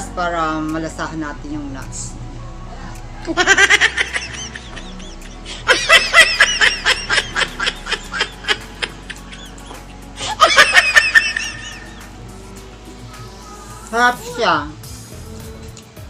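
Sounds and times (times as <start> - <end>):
background music: 0.0 - 16.0
person laughing: 3.2 - 12.1.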